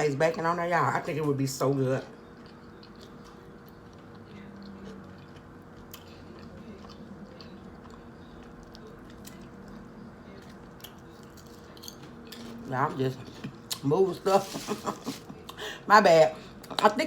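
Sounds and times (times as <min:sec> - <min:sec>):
faint room hum: 0:00.0 - 0:17.0
person chewing: 0:02.2 - 0:09.8.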